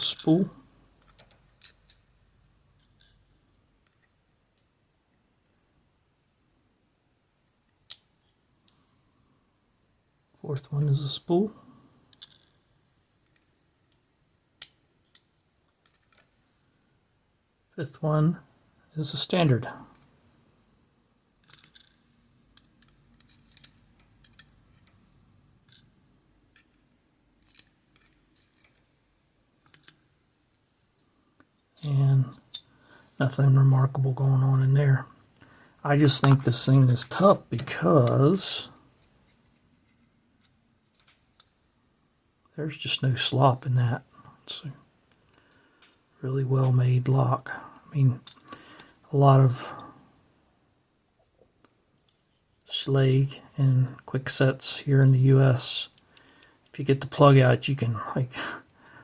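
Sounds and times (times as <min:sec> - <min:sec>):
metallic clicks of lock parts: 0:01.0 - 0:02.1, 0:07.4 - 0:08.9, 0:13.2 - 0:14.0, 0:14.6 - 0:16.4, 0:21.4 - 0:25.0, 0:26.5 - 0:28.9, 0:29.6 - 0:30.8, 0:31.4 - 0:32.7, 0:39.0 - 0:41.6, 0:48.2 - 0:49.0.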